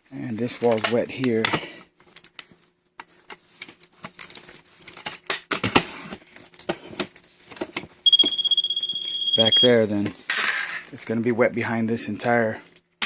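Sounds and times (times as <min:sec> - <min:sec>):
crinkling handling noises: 0:00.1 - 0:08.4
high-pitched meter beep: 0:08.0 - 0:09.8.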